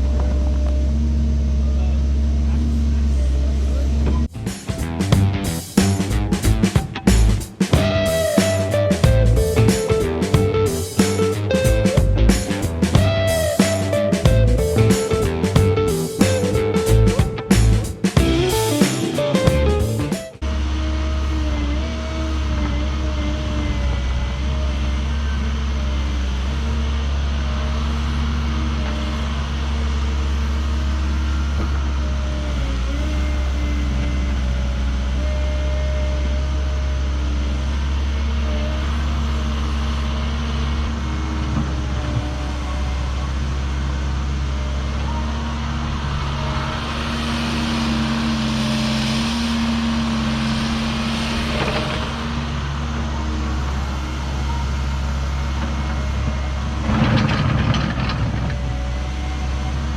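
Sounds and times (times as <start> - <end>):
excavator diesel engine under load: 0.0 - 59.9
short rattle: 56.7 - 59.0.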